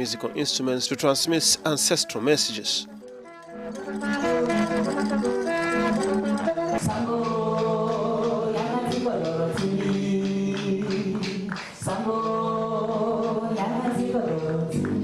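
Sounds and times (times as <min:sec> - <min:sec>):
sharp percussion strikes: 0:01.8 - 0:07.4
group of voices singing: 0:06.8 - 0:15.0.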